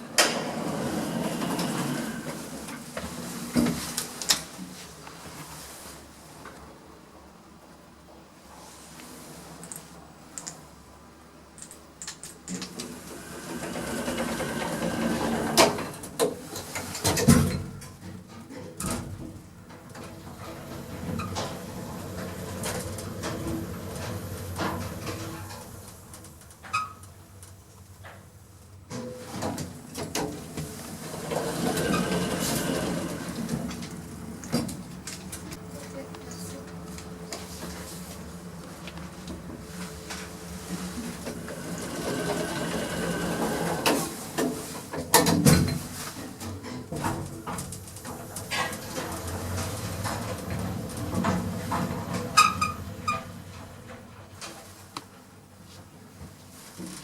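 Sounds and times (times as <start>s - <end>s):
lift machinery hum: 0.0s - 3.9s, 19.1s - 26.7s, 30.0s - 44.7s, 47.2s - 54.9s.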